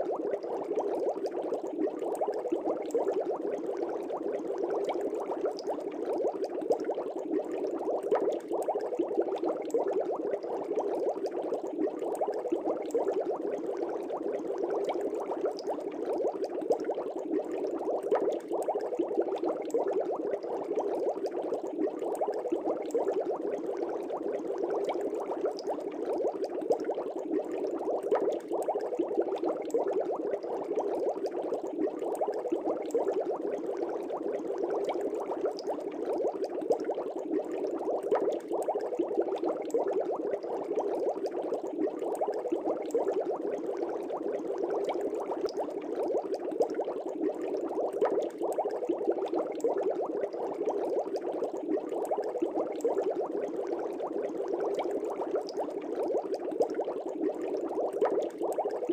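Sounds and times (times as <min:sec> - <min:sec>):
aquarium air bubbling: 0:00.0 - 0:58.9.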